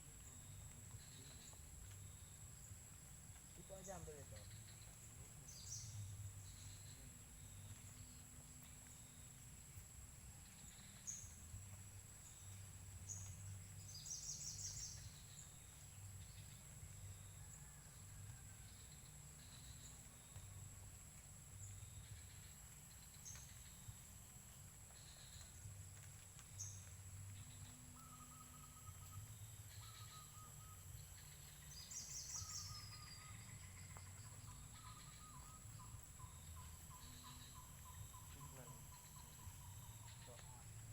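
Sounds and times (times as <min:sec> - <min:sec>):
high insect drone: 0:00.0 - 0:40.9
bird chirps: 0:10.4 - 0:17.8, 0:24.9 - 0:40.9.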